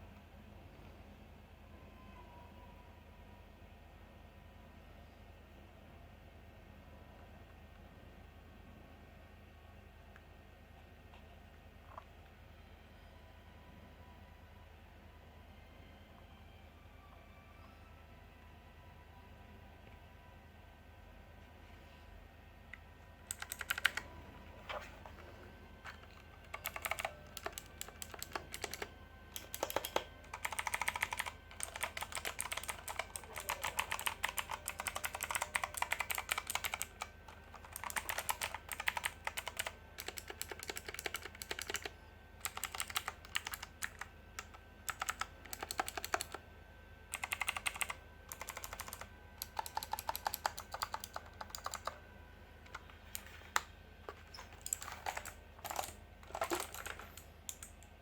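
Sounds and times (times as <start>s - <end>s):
mechanical keyboard key clicks: 23.3s - 24.0s, 26.5s - 46.4s, 47.1s - 51.9s, 54.3s - 57.8s.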